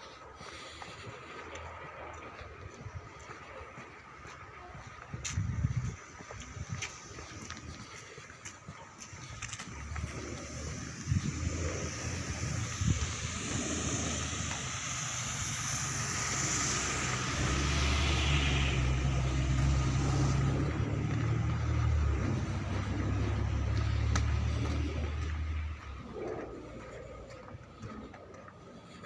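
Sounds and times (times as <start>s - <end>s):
vehicle passing with hiss: 0.0s - 29.0s
low rumble: 9.1s - 29.0s.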